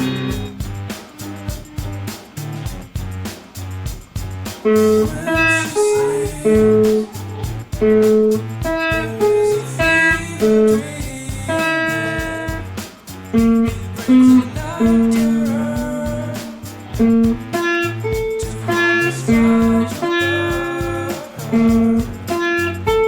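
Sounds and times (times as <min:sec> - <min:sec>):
guitar music: 0:00.0 - 0:02.1
low accompaniment: 0:00.0 - 0:23.0.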